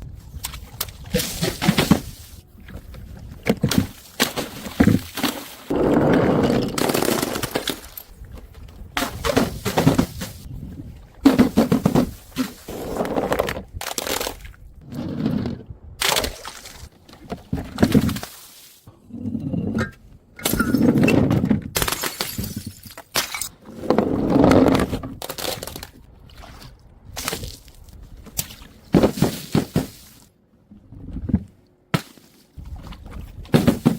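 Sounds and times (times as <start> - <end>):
glass bottles breaking: 21.8 - 23.5.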